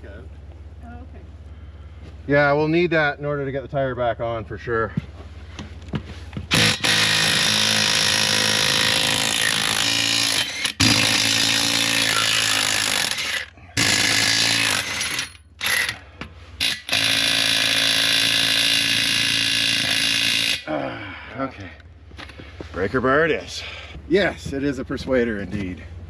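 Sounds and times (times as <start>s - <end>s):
impact wrench hammering: 6.4s - 20.7s.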